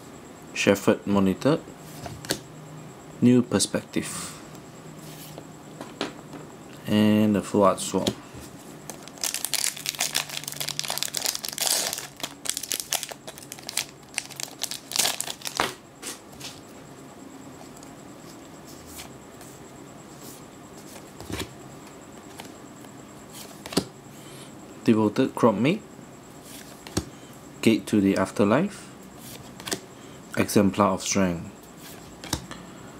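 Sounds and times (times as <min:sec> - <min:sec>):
foil wrapper tearing and crinkling: 0:08.9 - 0:15.7.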